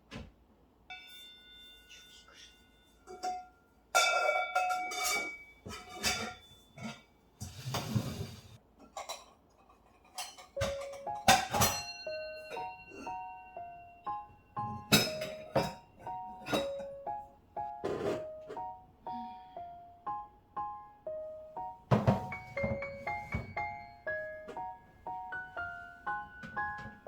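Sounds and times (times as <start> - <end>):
kitchen things clinking: 0.9 - 17.1, 21.9 - 24.7
soft piano music: 10.4 - 27.0.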